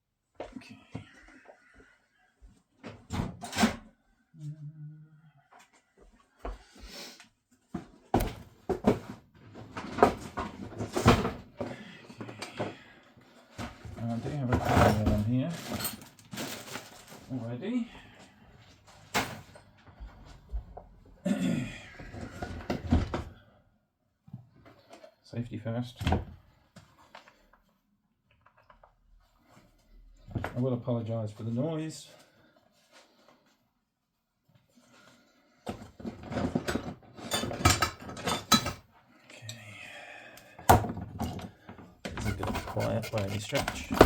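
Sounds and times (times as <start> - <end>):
metal tools clattering: 14.6 - 17.2, 36.5 - 38.8, 42.2 - 44.0
tools clicking and knocking: 42.1 - 44.0.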